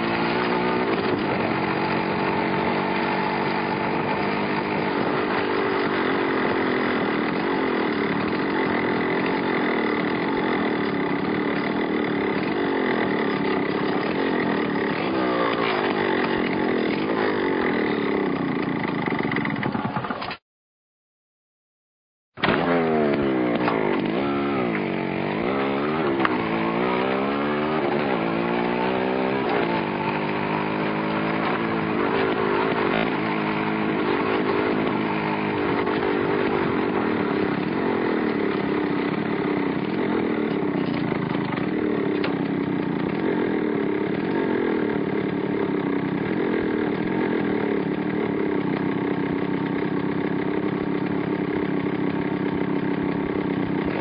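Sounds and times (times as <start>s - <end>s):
motorcycle accelerating through gears: 0.0s - 20.2s, 22.4s - 54.0s.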